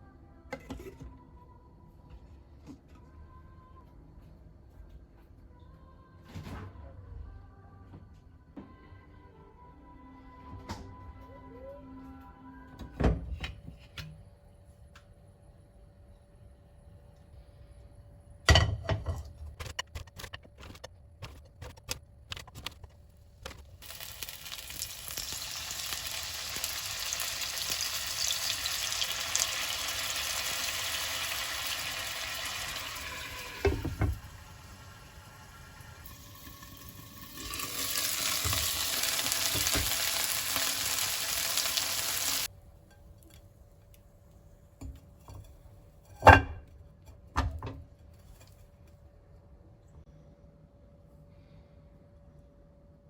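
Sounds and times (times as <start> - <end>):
food sizzling in a pan: 23.8 - 42.5.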